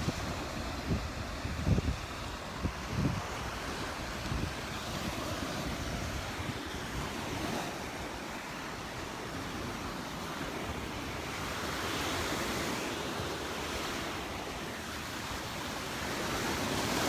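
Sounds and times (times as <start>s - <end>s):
wind buffeting microphone: 0.0s - 8.2s
surf washing onto beach: 0.0s - 17.0s.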